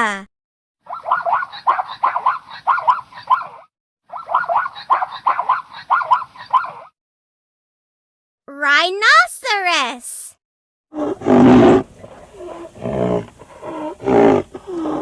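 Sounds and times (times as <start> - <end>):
zebra barking calls: 0.9 - 6.8.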